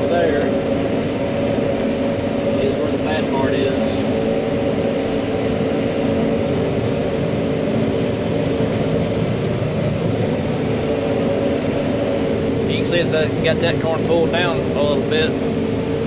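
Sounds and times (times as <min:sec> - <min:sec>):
combine harvester running: 0:00.0 - 0:16.0.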